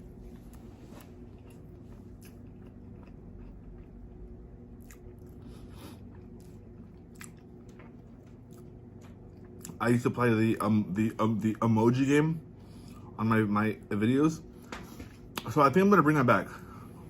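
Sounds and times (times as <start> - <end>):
steady low hum: 0.0 - 17.0
close chewing: 0.3 - 9.8.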